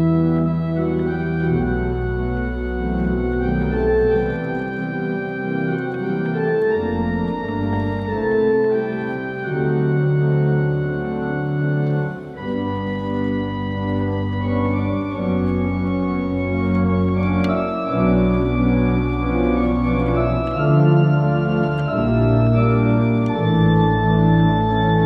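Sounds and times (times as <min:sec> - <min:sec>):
organ playing chords: 0:00.0 - 0:25.0.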